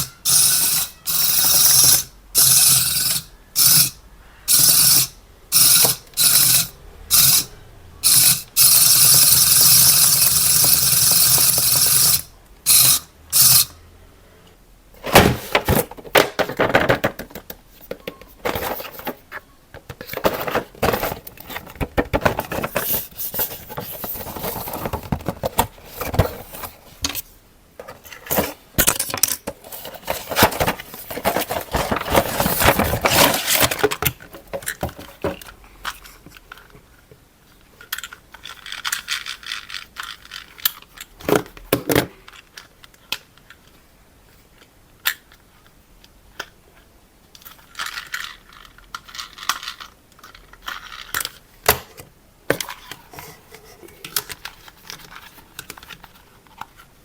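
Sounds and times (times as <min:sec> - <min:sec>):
toy electric motor whirring: 0:00.0 - 0:13.8.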